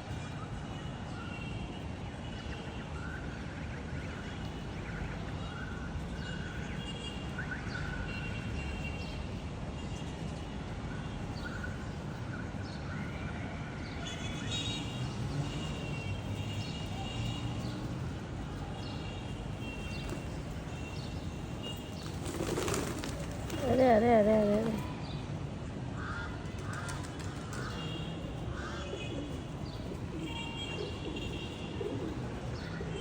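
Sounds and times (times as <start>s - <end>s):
birds chirping: 18.8s - 25.2s.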